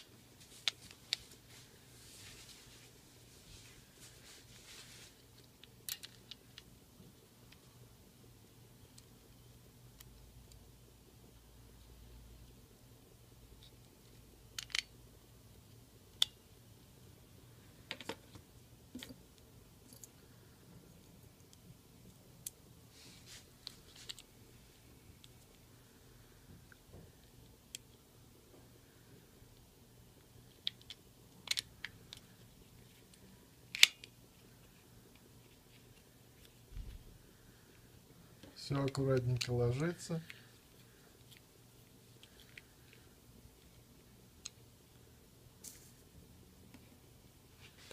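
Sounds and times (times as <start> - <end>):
plastic parts clicking: 33.7 - 34.1.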